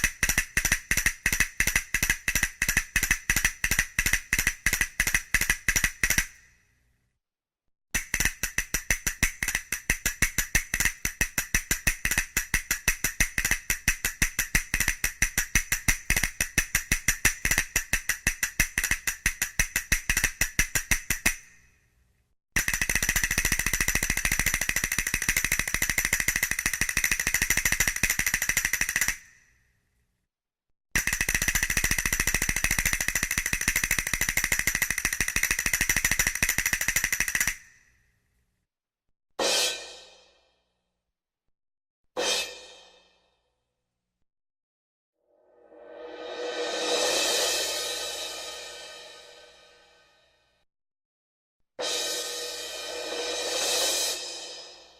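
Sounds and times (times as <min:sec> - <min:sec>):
rapid metallic percussion roll: 0:45.8 - 0:50.0, 0:51.8 - 0:54.9.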